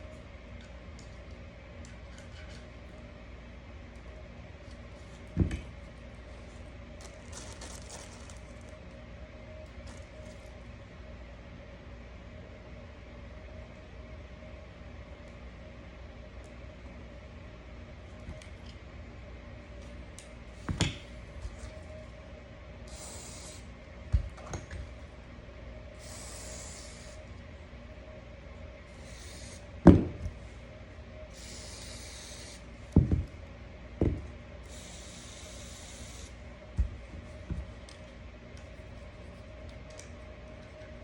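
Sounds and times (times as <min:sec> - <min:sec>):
faint steady hum: 0:00.0 - 0:41.0
spray can hissing: 0:26.0 - 0:27.1, 0:29.0 - 0:29.6, 0:31.4 - 0:32.6.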